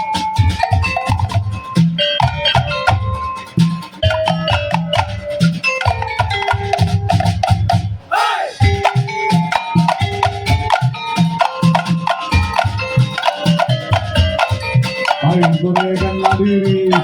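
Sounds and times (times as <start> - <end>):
low drum beat: 8.6 - 17.0.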